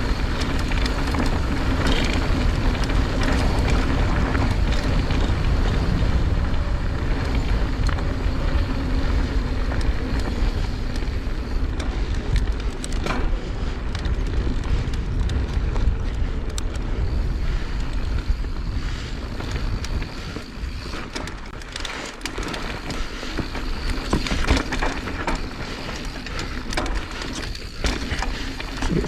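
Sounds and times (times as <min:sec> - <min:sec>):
wind buffeting microphone: 0:00.0 - 0:21.8, 0:22.4 - 0:29.0
bike rattling and clicking: 0:00.0 - 0:29.0
tyres rumbling over dirt: 0:00.0 - 0:29.0.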